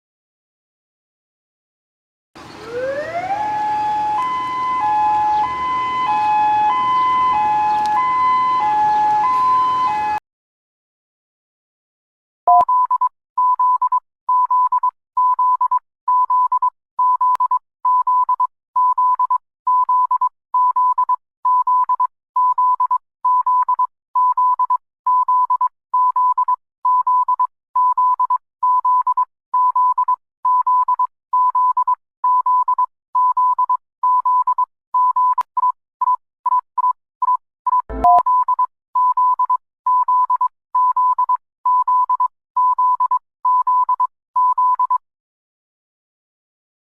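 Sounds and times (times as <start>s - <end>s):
short rapid beeps: 12.5s - 45.0s
brief lower tone: 37.8s - 38.6s
electronic alert beeping: 37.9s - 38.6s.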